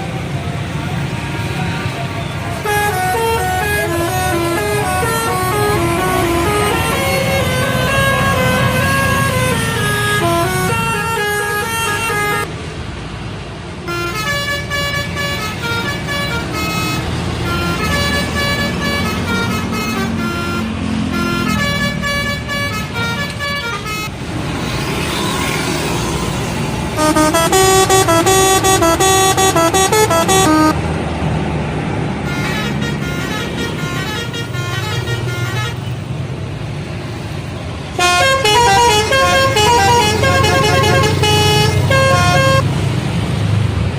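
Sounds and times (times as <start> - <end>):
bus engines running: 0.0 - 43.9
bus horns playing melodies: 0.8 - 12.5, 13.8 - 24.2, 26.9 - 30.9, 32.2 - 36.3, 37.8 - 42.8.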